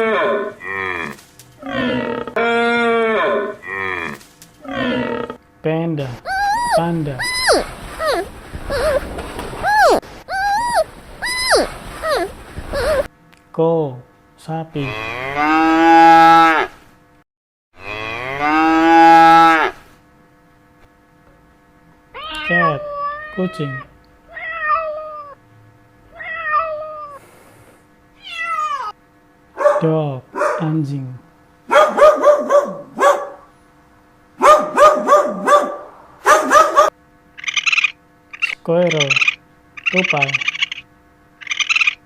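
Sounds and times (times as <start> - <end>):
cow mooing: 0.0 - 5.4, 14.8 - 16.7, 17.8 - 19.8
dog barking: 29.6 - 30.8, 31.7 - 33.5, 34.4 - 37.0.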